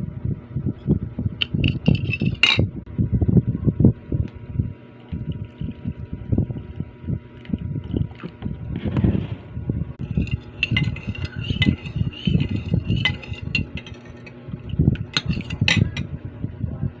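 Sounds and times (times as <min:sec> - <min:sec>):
glassware and utensils clinking: 0:01.4 - 0:02.7, 0:10.0 - 0:14.4, 0:15.0 - 0:16.1.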